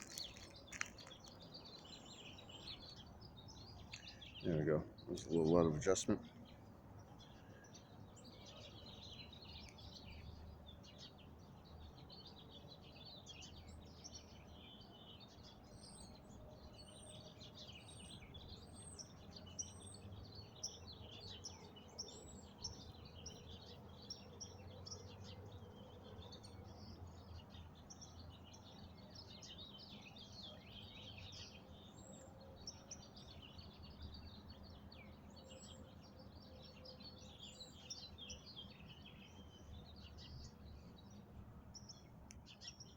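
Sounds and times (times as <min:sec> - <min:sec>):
small birds chirping and singing: 0:00.0 - 0:42.9.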